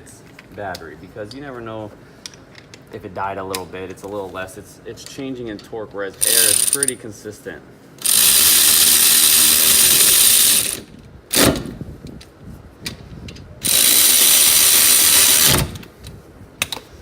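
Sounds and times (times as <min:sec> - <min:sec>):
power ratchet running: 0:06.2 - 0:06.9, 0:08.0 - 0:11.6, 0:13.6 - 0:15.8.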